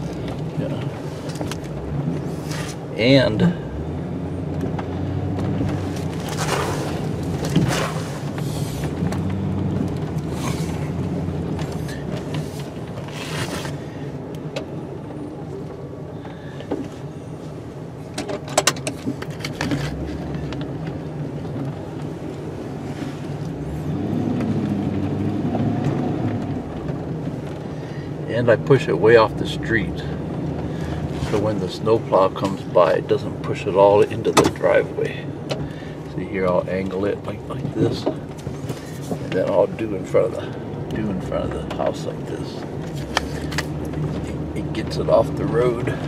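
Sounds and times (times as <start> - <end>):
snow plow engine running: 0.0 - 46.0.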